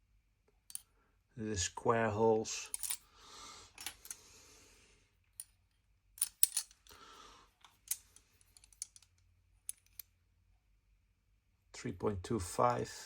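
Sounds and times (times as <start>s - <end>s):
small metal tools clicking: 6.2s - 7.0s, 7.6s - 10.1s.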